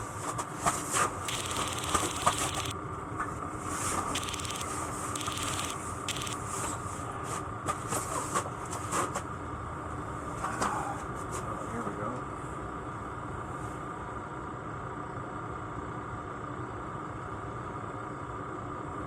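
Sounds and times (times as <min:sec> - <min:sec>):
clicks and rustles of gear: 0:01.3 - 0:02.7, 0:04.2 - 0:06.4
heater whirring hum: 0:01.3 - 0:02.8.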